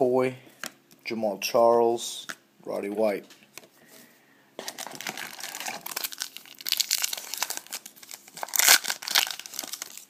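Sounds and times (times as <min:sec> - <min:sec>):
foil wrapper tearing and crinkling: 0:04.6 - 0:10.0.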